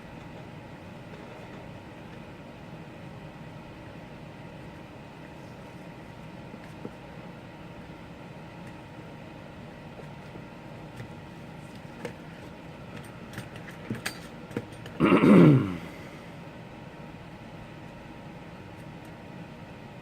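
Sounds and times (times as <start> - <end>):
steady background hum: 0.0 - 20.0
person groaning: 15.0 - 16.2.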